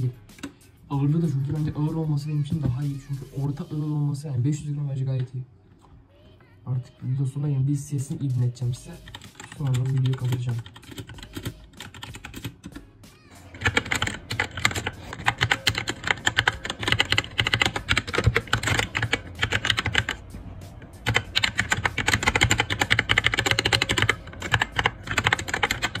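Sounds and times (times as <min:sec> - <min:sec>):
fast mechanical keyboard typing: 0:09.0 - 0:12.8, 0:13.5 - 0:20.2, 0:21.0 - 0:26.0.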